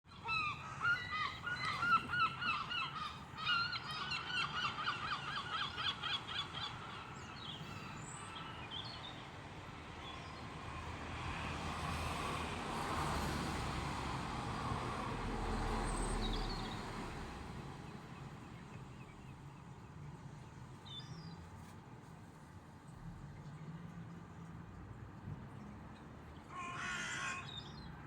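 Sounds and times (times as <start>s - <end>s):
birds honking: 26.5s - 27.5s.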